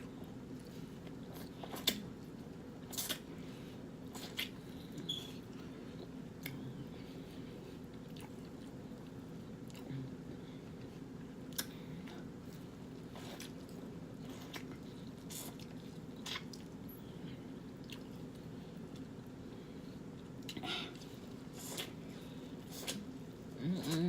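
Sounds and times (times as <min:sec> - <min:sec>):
steady low hum: 0:00.0 - 0:24.0
wet chewing and mouth smacks: 0:00.3 - 0:03.3, 0:04.1 - 0:06.6, 0:07.8 - 0:09.9, 0:10.8 - 0:16.9, 0:17.6 - 0:19.4.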